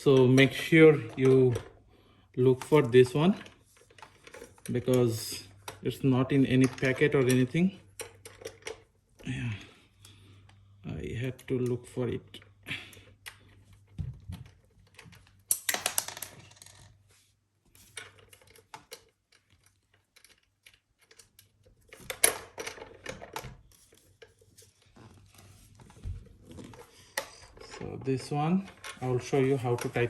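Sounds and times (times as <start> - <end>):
metal hardware clicking and clinking: 26.7 - 30.0.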